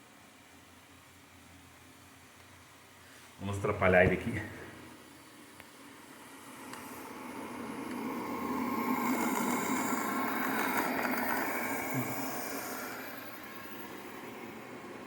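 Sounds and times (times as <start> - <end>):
robot vacuum whirring: 6.3 - 15.0.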